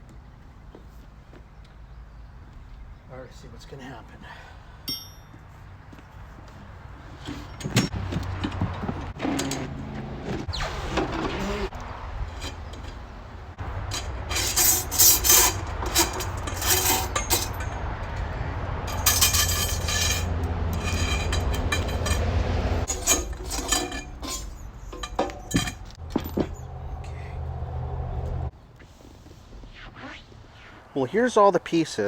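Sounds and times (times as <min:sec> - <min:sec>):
steel parts clinking and clanking: 0:04.9 - 0:05.4, 0:07.2 - 0:09.8, 0:12.1 - 0:27.1.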